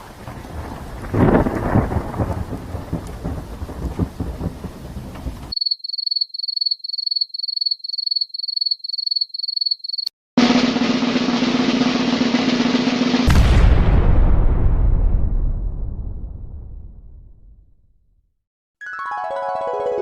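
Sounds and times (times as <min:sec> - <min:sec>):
heavy rain: 0:00.0 - 0:05.5
rumbling thunder: 0:00.0 - 0:05.5, 0:11.3 - 0:17.6.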